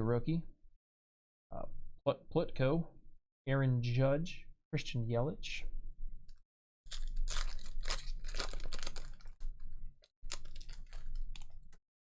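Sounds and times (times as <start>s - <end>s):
card packs crinkling: 6.9s - 11.8s.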